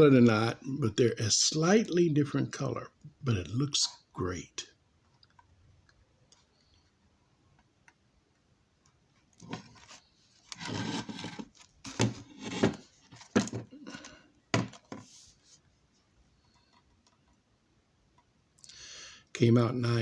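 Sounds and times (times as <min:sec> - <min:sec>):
rubbing handling noise: 0:09.0 - 0:17.5.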